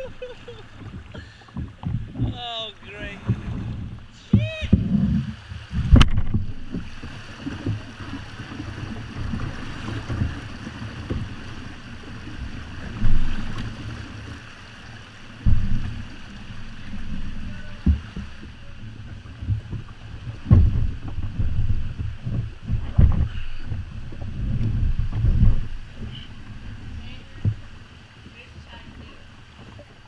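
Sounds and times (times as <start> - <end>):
water sloshing: 0.0 - 30.0
wind rumble on microphone: 0.0 - 30.0
dull thumps: 3.2 - 7.9, 15.4 - 18.4, 19.4 - 26.2.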